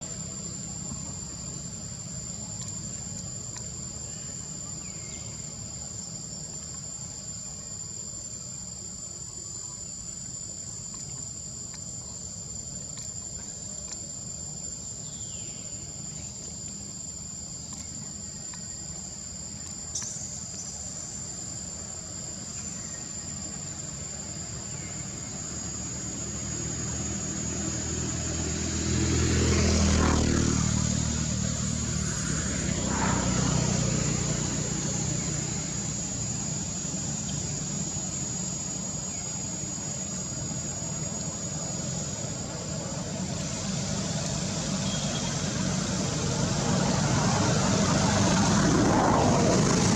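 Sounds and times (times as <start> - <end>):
insects chirring: 0.0 - 49.9
low engine hum: 24.5 - 49.9
vehicle passing by: 26.2 - 37.2, 42.2 - 49.9.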